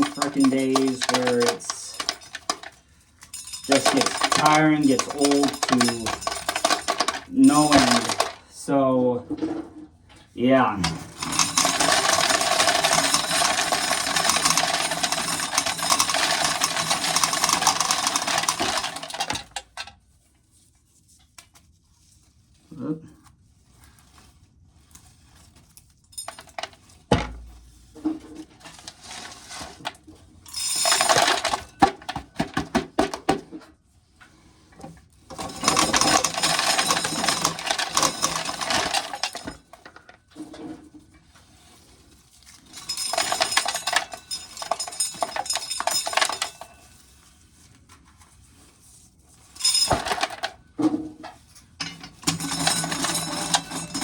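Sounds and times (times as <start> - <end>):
corn kernels rattling into container: 0.0 - 2.8, 3.4 - 8.7, 10.4 - 19.9, 30.5 - 33.2, 35.3 - 40.1, 42.7 - 46.7, 49.6 - 50.6, 52.0 - 54.0.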